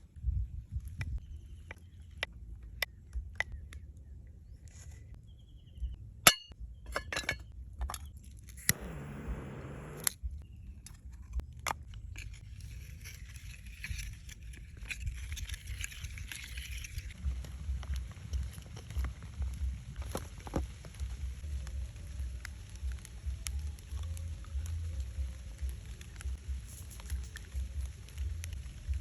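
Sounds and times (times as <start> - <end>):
clinks and knocks of hard objects: 6.3 - 8.2.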